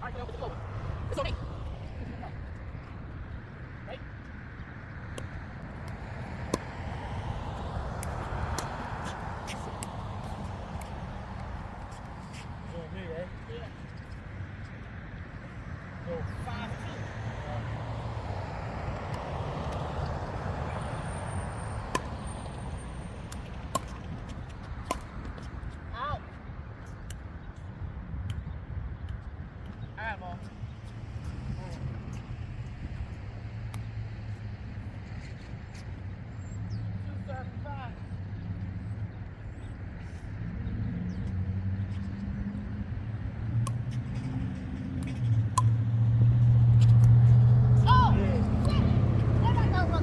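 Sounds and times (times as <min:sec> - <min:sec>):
steady low rumble: 0:00.0 - 0:16.0
paddles striking pickleball: 0:05.0 - 0:12.5, 0:19.0 - 0:25.8, 0:43.5 - 0:50.0.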